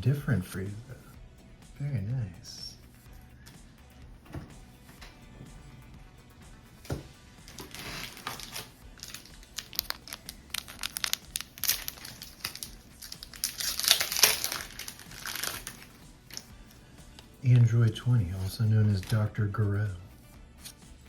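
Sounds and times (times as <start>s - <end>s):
foil wrapper crinkling: 7.5s - 16.5s, 18.7s - 19.3s.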